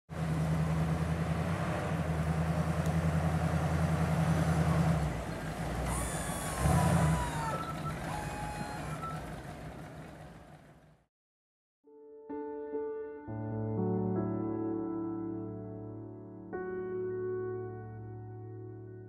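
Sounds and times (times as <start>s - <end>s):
large vehicle engine humming: 0.1s - 11.1s
thin high squeals: 5.9s - 9.3s.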